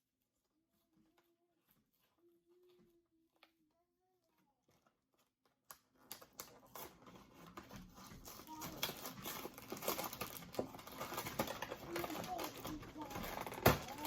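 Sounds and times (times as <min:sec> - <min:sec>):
plastic packaging crinkling: 0:04.6 - 0:14.0.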